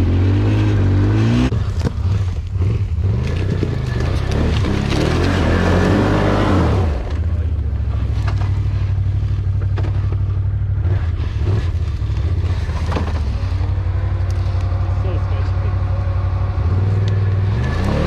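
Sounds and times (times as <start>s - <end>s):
atv engine revving: 0.0s - 18.0s
knocks and rattles: 9.4s - 10.5s, 11.6s - 14.7s.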